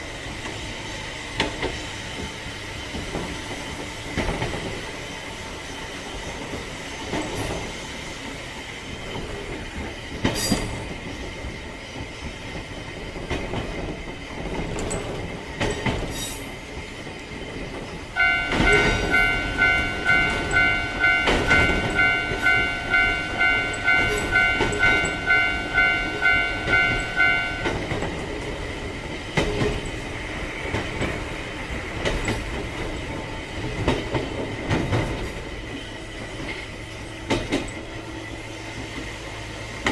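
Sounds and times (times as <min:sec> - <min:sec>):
railcar running over rail joints: 0:00.0 - 0:39.9
level crossing warning bell: 0:18.2 - 0:28.4.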